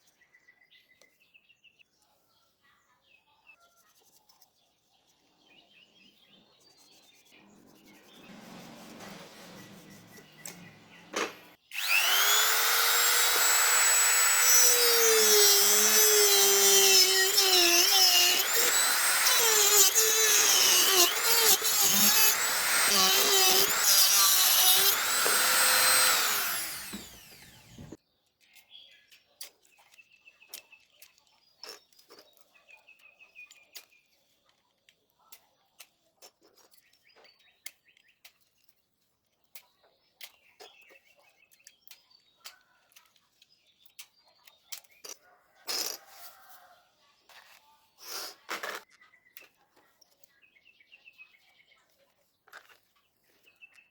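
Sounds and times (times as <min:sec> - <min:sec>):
high-speed power tool: 0:08.3 - 0:28.0.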